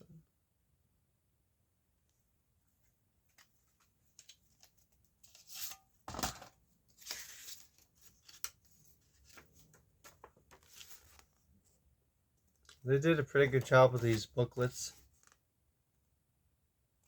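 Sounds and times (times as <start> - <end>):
paper rustling and swishing: 6.9 - 11.4.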